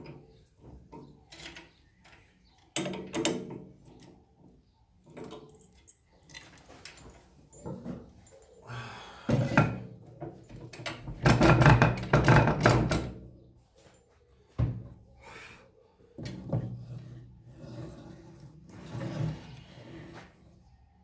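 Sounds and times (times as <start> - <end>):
rattling wooden knocks: 11.0 - 13.1.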